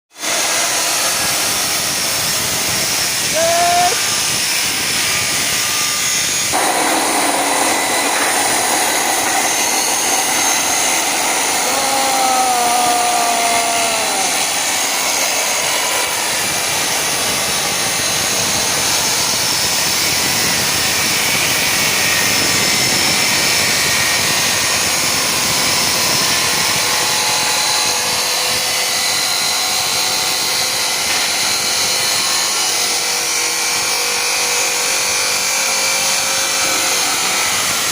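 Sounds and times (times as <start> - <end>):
metalworking tools hissing: 0.3 - 21.2.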